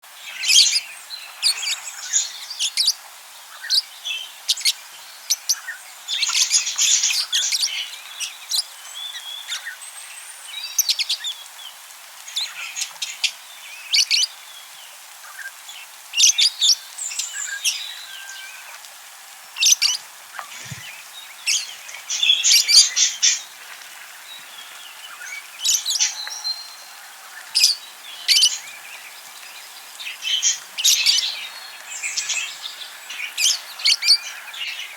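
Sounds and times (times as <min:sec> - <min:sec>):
faint steady hiss: 0:00.0 - 0:34.9
budgerigars chirping: 0:27.4 - 0:28.7.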